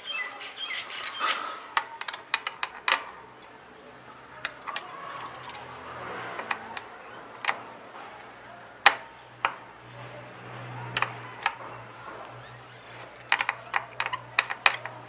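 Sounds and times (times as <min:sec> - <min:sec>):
spanner clicking on metal bolt: 0:13.1 - 0:15.0.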